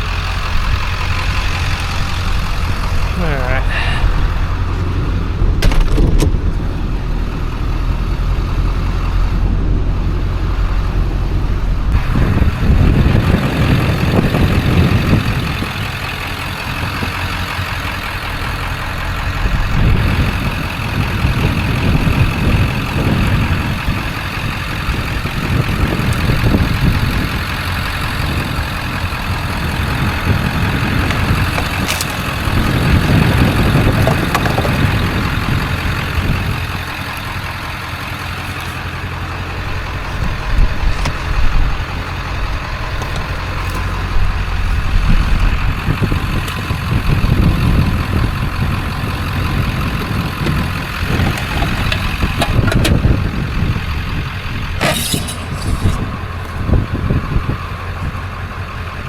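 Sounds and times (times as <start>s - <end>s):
vehicle engine and road rumble: 0.0s - 59.0s.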